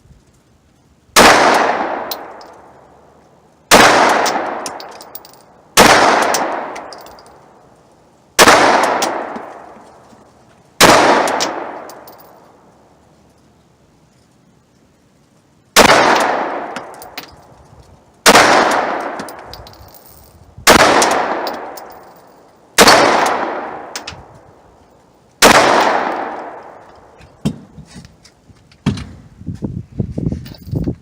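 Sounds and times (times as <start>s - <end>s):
pistol shots echoing: 1.2s - 2.7s, 3.7s - 5.2s, 5.8s - 7.0s, 8.4s - 9.8s, 10.8s - 12.2s, 15.8s - 17.2s, 18.2s - 19.5s, 20.7s - 22.0s, 22.8s - 24.0s, 25.4s - 26.8s.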